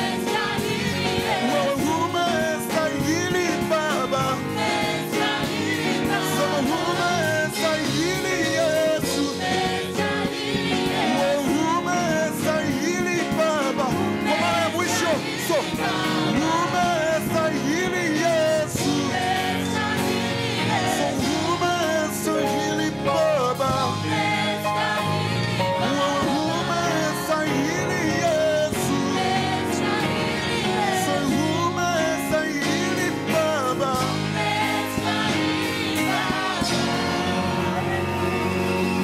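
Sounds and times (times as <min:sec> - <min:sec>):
band playing gospel music: 0:00.0 - 0:39.0
choir singing: 0:00.0 - 0:39.0
drums steady beat: 0:32.7 - 0:39.0.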